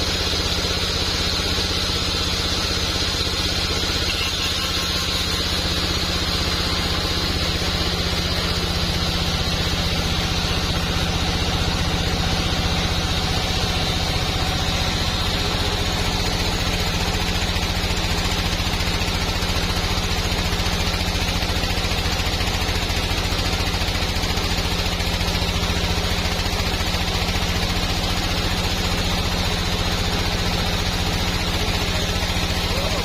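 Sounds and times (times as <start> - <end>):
sawmill machinery humming: 0.0 - 33.0.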